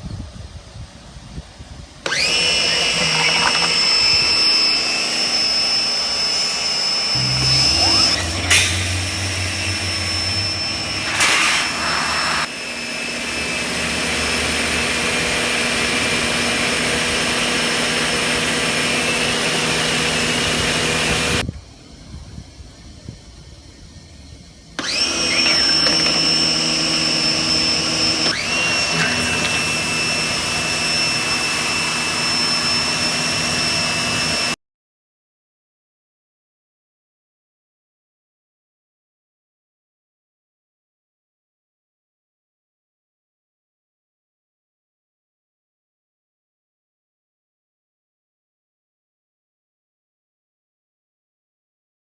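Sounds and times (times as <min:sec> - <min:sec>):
pressure washer motor whining: 0:02.0 - 0:21.4, 0:24.8 - 0:34.5.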